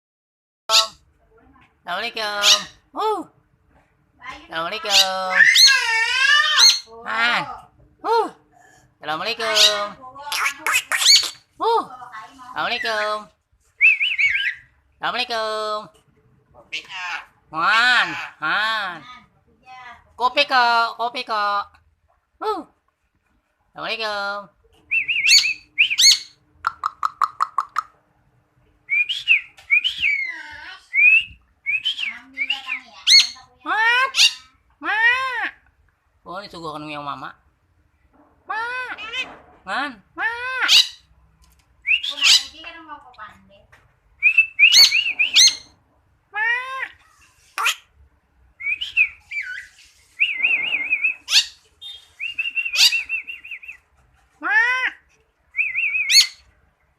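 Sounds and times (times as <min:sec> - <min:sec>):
starling whistling: 0:13.8 - 0:14.7, 0:24.9 - 0:26.4, 0:28.9 - 0:30.3, 0:30.9 - 0:33.3, 0:41.8 - 0:42.5, 0:44.2 - 0:45.7, 0:48.6 - 0:53.8, 0:55.6 - 0:56.4
bird whistled notes: 0:48.6 - 0:53.8.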